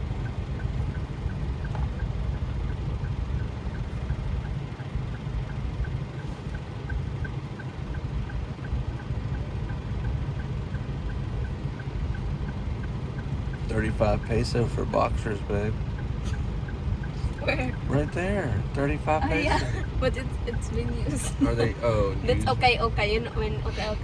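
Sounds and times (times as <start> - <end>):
engine and road rumble: 0.0 - 24.0
faint regular ticking: 0.0 - 24.0.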